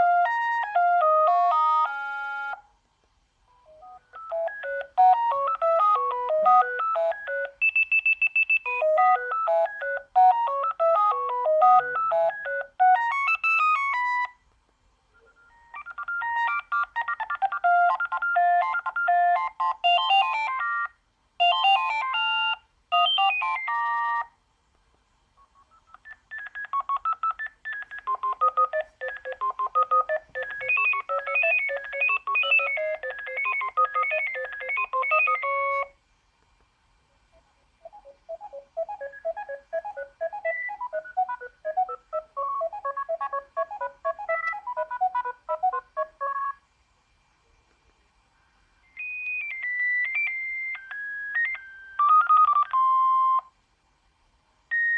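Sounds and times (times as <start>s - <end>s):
mobile phone ringtone melodies: 0.0s - 2.7s, 3.6s - 14.4s, 15.2s - 24.3s, 25.7s - 35.9s, 37.8s - 46.6s, 48.9s - 53.5s.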